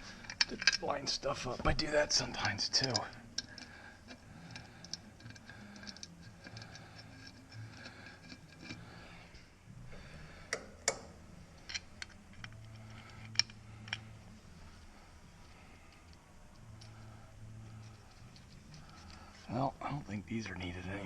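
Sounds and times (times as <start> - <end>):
clicks and taps of hand tools: 10.5 - 11.1.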